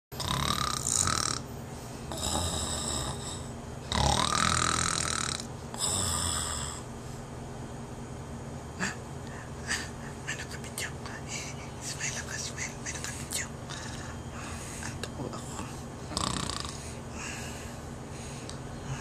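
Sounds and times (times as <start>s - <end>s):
baby snoring: 0.2s - 1.4s, 2.1s - 6.8s, 16.1s - 17.0s.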